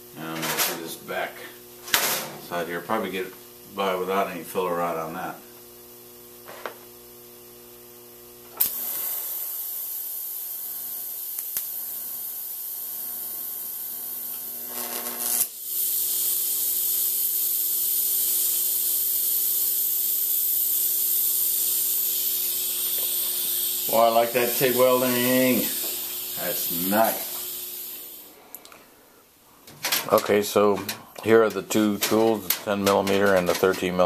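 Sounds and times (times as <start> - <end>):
low electrical hum: 0.0 - 34.0
welding arc hissing: 8.5 - 28.6, 29.6 - 34.0.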